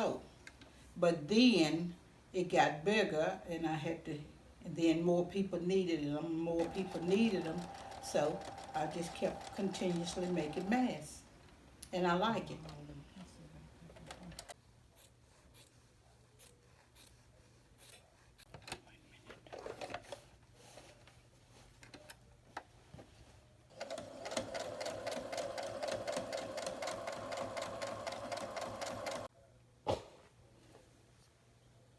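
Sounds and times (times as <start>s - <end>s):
sewing machine stitching: 6.6s - 11.0s, 23.7s - 29.3s.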